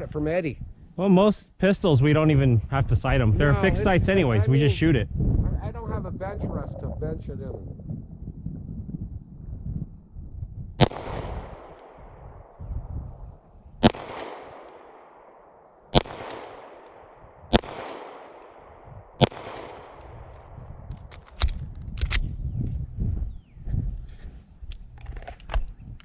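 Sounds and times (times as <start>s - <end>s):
handgun shots with echo: 10.8s - 12.5s, 13.8s - 20.4s.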